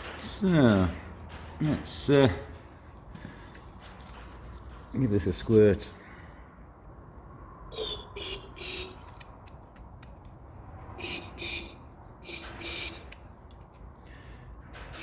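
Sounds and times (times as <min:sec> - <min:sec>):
aerosol can spraying: 0:11.0 - 0:13.0.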